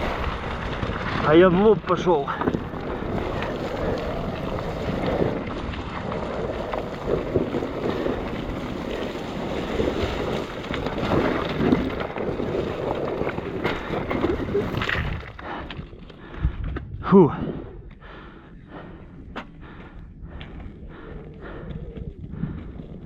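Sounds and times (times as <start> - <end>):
motorcycle engine climbing: 0.0 - 17.0
wind buffeting microphone: 0.0 - 23.0.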